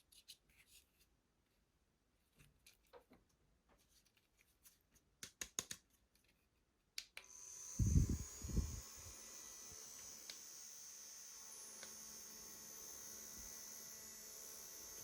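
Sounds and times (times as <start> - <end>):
mini fan motor whirring: 7.2 - 15.0.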